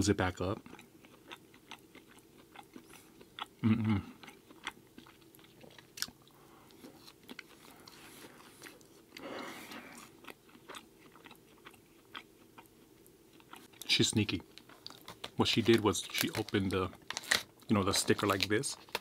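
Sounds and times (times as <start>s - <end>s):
close chewing with mouth clicks: 0.6s - 13.9s.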